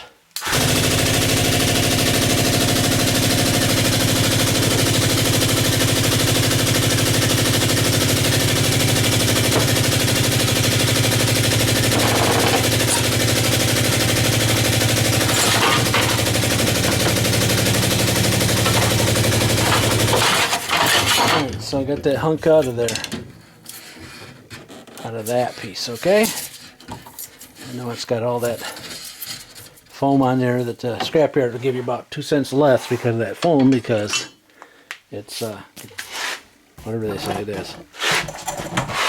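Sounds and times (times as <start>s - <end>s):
electric winch buzzing drone: 0.4s - 2.4s, 6.3s - 20.5s.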